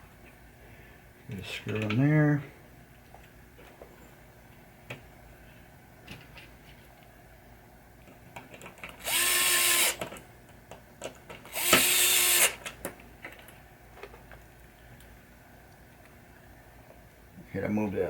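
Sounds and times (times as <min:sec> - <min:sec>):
power drill driving screw: 0:09.0 - 0:10.1, 0:11.5 - 0:12.6.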